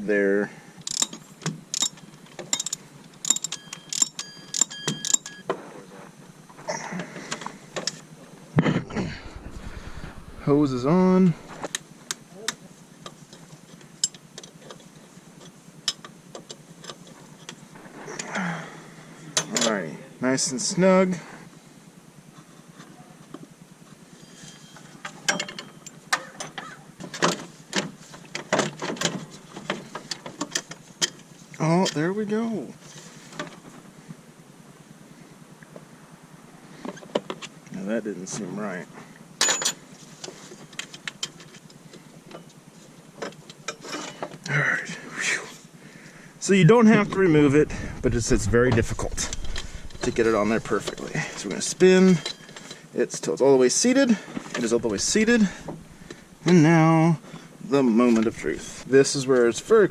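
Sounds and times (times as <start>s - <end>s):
metallic clicks of hand tools: 0.8s - 5.3s
metal tools clinking: 52.0s - 52.8s.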